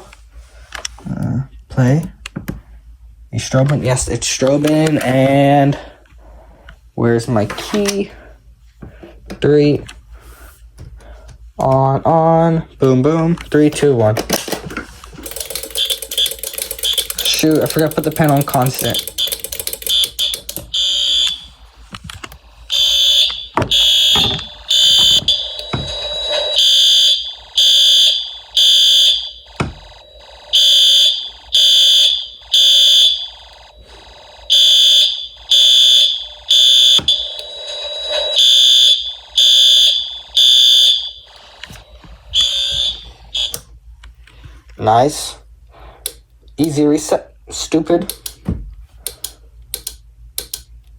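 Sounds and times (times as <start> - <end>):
fire alarm horn beeping: 15.2 - 21.7, 22.7 - 43.7.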